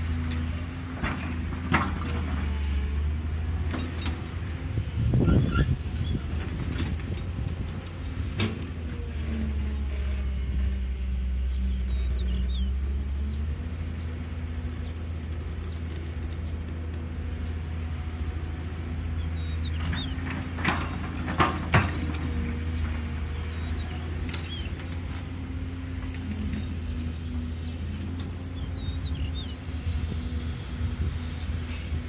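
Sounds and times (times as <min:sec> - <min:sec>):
excavator diesel engine running: 0:00.0 - 0:32.0
birds chirping: 0:22.4 - 0:29.8.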